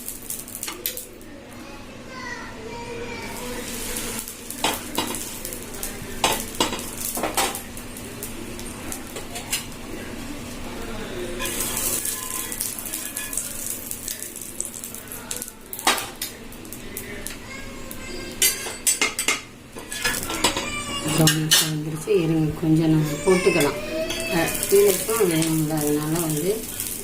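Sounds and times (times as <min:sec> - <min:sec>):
sandwich sizzling in a pan: 0:00.0 - 0:27.0
spatula scraping a pan: 0:11.3 - 0:13.4.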